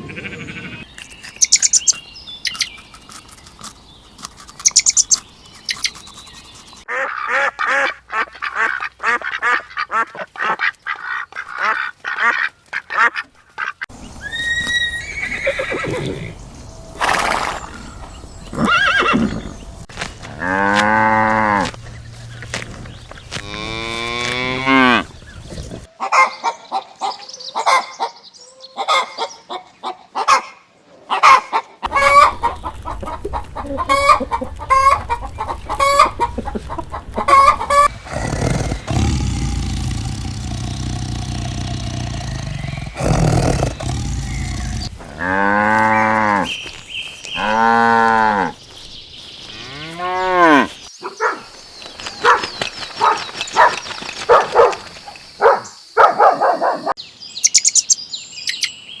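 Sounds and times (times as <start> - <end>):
cows mooing: 23.4 - 25.1, 33.8 - 46.6, 47.3 - 48.6, 49.6 - 50.8
chicken clucks: 31.2 - 37.9.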